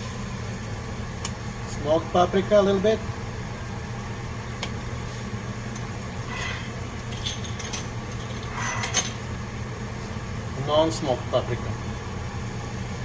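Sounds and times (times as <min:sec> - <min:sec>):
steady low hum: 0:00.0 - 0:13.0
utensils tapping and clinking: 0:06.3 - 0:09.2.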